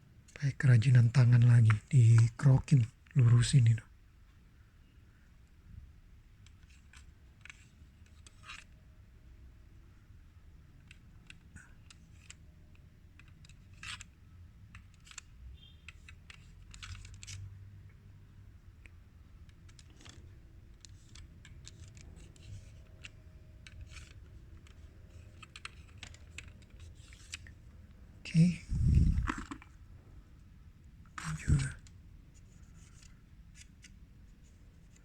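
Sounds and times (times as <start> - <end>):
small parts clicking and scratching: 6.4 - 8.8, 10.8 - 18.0, 18.8 - 28.1, 28.7 - 29.9, 31.1 - 35.0.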